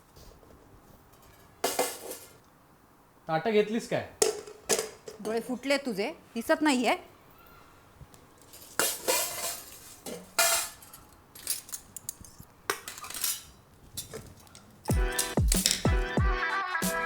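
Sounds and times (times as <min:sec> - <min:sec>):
plates and cutlery clinking: 0:01.1 - 0:02.4, 0:08.4 - 0:16.1
music with deep bass notes: 0:14.9 - 0:17.0.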